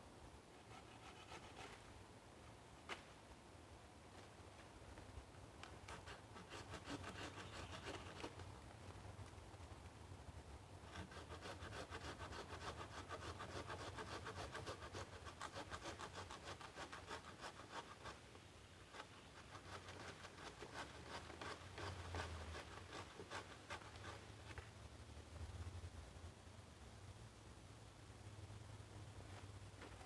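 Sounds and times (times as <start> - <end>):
hand saw cutting wood: 0.6 - 1.9, 5.8 - 8.4, 10.9 - 18.2, 18.9 - 24.3.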